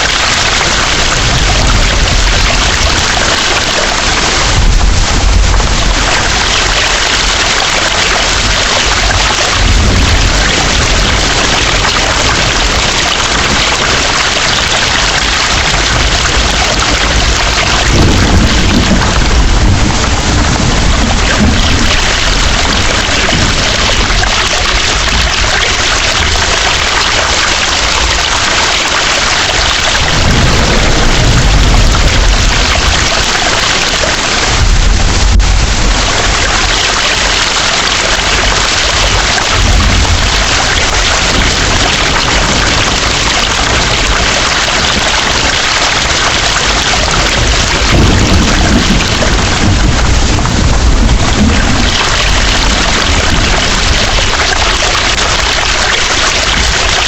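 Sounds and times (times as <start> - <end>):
heavy rain pouring: 0.0 - 57.0
low thunder rumbling: 0.0 - 57.0.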